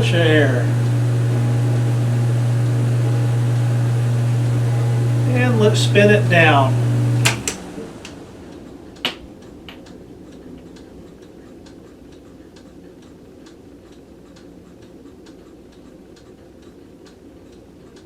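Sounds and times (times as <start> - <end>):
faint ticking: 0.0 - 18.0
fan motor hum: 0.0 - 18.0
low running noise: 0.0 - 18.0
fan switch click: 5.3 - 11.8.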